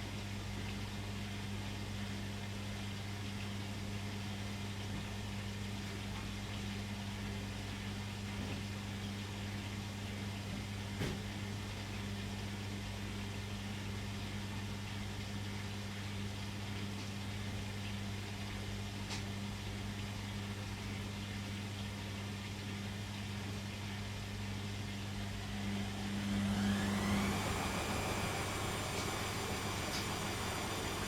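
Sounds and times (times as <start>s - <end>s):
washing machine drain pump hum: 0.0s - 31.0s
washing machine drum spinning up: 25.0s - 31.0s.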